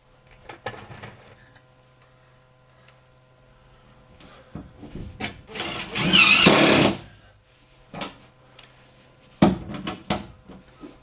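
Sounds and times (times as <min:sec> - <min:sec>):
cordless drill whirring: 0:05.5 - 0:07.0.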